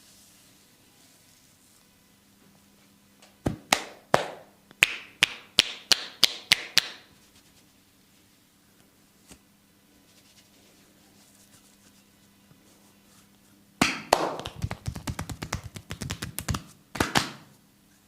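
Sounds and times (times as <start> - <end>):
hands slapping body: 3.4 - 7.0, 13.8 - 17.5.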